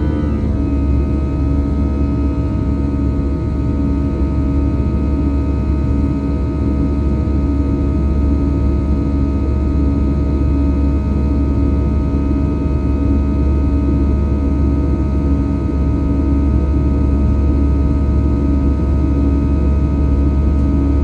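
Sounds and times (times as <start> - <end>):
jet engines rumbling and whining: 0.0 - 8.6.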